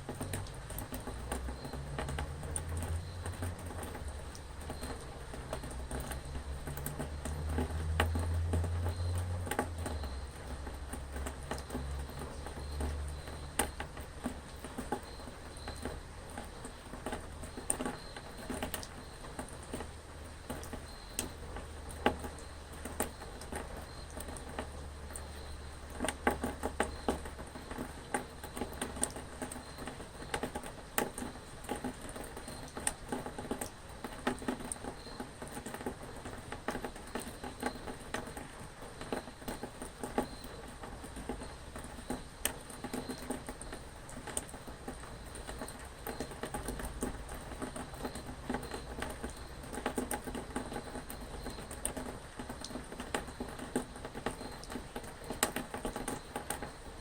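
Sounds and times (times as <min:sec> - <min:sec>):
rain pattering: 0:00.0 - 0:57.0
raindrops ticking: 0:00.0 - 0:57.0.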